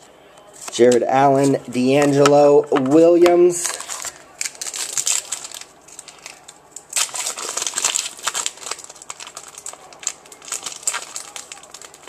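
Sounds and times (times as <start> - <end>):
foil wrapper crinkling: 3.5 - 12.0.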